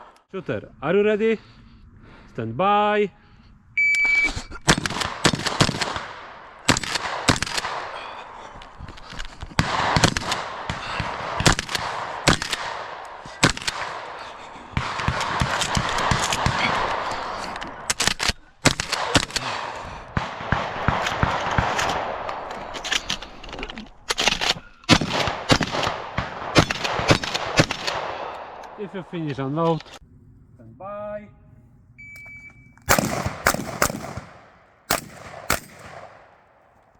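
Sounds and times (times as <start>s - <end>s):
shotgun shots with echo: 4.7s - 8.2s, 32.2s - 36.9s.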